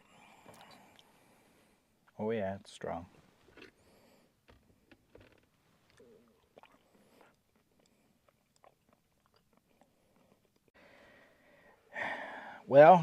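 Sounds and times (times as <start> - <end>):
faint chewing: 0.4 - 1.2, 3.4 - 4.2, 5.3 - 10.8.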